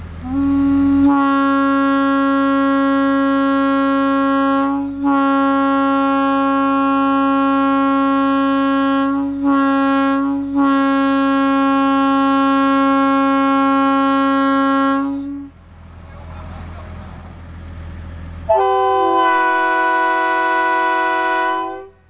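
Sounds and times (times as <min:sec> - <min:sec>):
locomotive air horn blasts: 0:00.2 - 0:15.6, 0:18.5 - 0:22.0.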